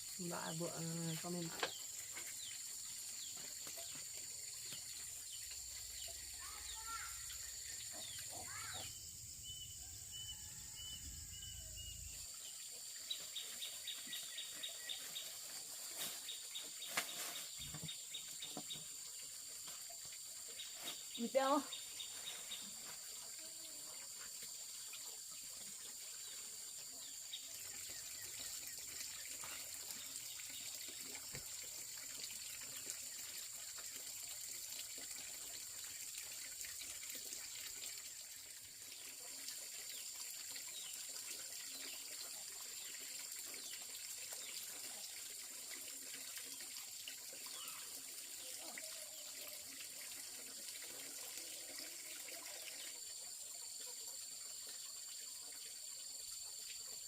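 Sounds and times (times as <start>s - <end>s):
water trickling and splashing: 0.0s - 9.1s, 9.9s - 57.0s
lower insect tone: 0.0s - 15.4s.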